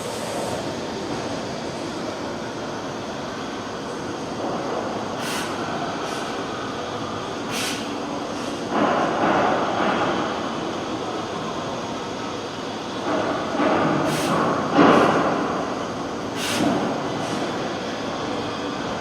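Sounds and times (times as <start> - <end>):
laser cutting machine running: 0.0 - 19.0
short high hisses: 7.5 - 8.5.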